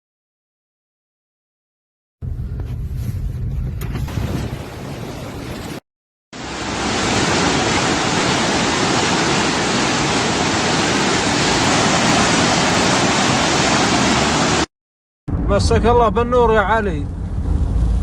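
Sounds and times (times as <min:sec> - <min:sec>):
loud steady rushing noise: 0:06.4 - 0:14.7.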